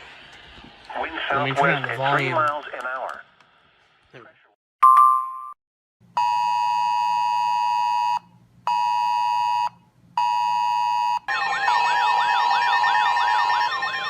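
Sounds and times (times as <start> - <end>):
warbling siren-like alarm: 11.3 - 14.0.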